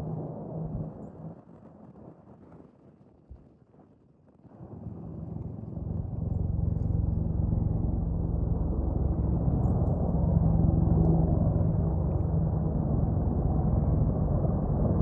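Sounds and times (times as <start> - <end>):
helicopter rotor and engine noise: 0.0 - 1.5, 4.6 - 15.0.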